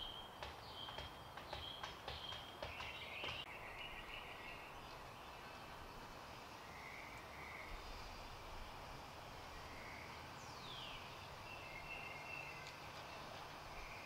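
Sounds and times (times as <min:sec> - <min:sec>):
faint outdoor ambience: 0:00.0 - 0:14.0.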